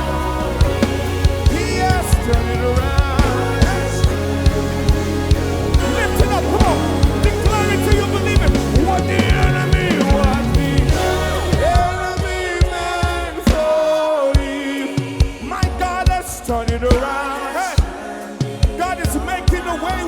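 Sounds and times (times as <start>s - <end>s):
bass: 0.0s - 12.2s
drum beat: 0.0s - 19.8s
voices singing: 0.0s - 20.0s.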